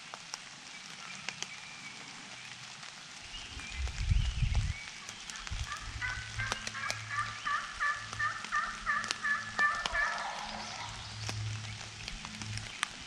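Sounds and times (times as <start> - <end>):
raindrops ticking: 0.0 - 13.0
wild turkey yelping: 5.0 - 11.2.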